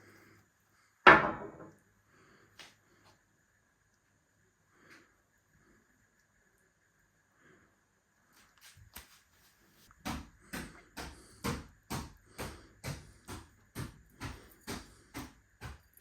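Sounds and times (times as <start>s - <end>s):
sharp rhythmic knocking: 10.0s - 16.0s.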